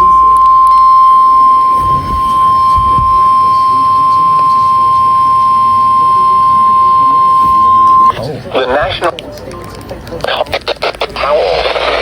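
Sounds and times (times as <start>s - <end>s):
high-pitched warning alarm tone: 0.0s - 8.2s.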